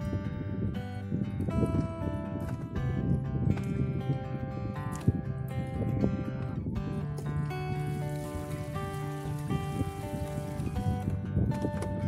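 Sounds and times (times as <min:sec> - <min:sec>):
background music held notes: 0:00.0 - 0:12.0
steady hiss: 0:07.9 - 0:10.8.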